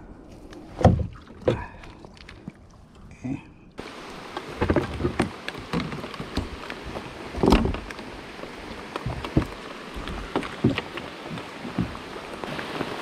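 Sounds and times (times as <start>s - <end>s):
rain falling: 3.8s - 13.0s
raindrops ticking on plastic: 4.2s - 13.0s.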